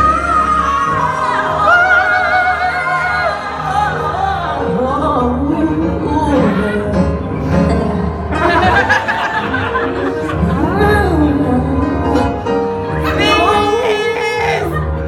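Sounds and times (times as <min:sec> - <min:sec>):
backing music: 0:00.0 - 0:15.0
person singing with vibrato: 0:13.0 - 0:14.8.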